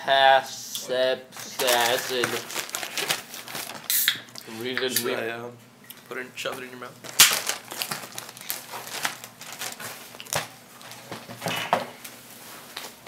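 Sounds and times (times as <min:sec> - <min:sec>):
plastic packaging crinkling: 0:01.3 - 0:04.4, 0:07.0 - 0:11.3.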